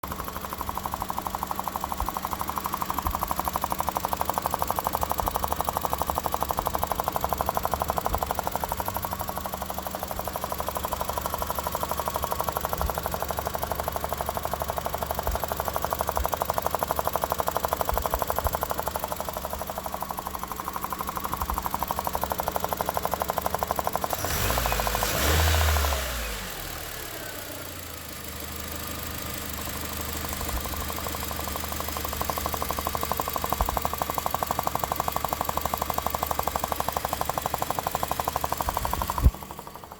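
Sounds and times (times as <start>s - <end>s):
car engine knocking: 0.0s - 39.9s.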